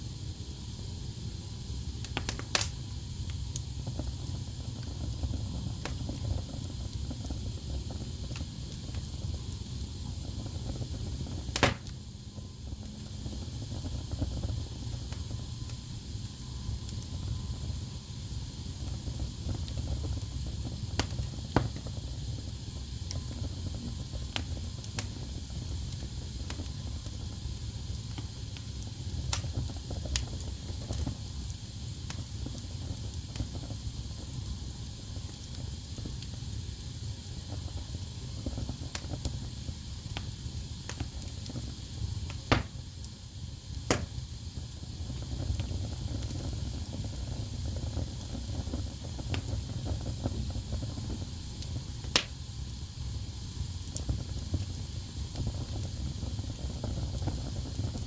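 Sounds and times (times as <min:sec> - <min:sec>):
wood fire crackling: 0:00.1 - 0:58.0.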